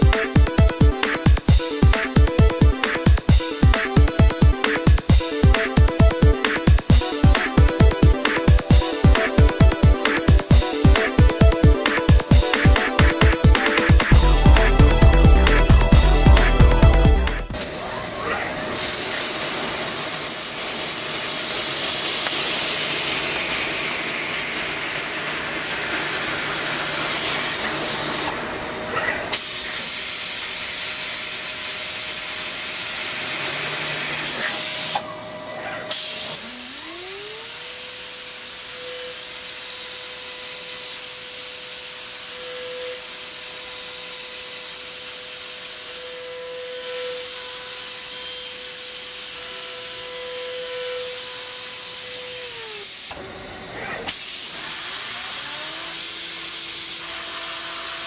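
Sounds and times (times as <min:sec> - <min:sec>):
spindle motor whine: 0:00.0 - 0:29.4, 0:31.7 - 0:58.0
coolant spraying hiss: 0:54.2 - 0:56.1.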